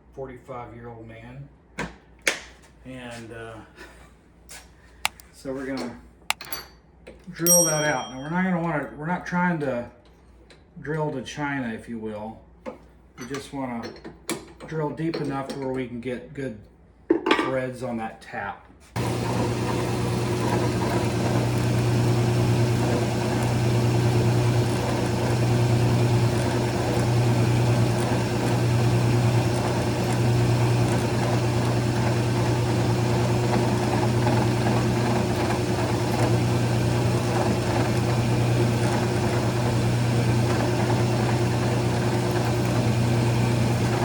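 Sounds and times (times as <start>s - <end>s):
drill press humming: 19.0s - 44.0s.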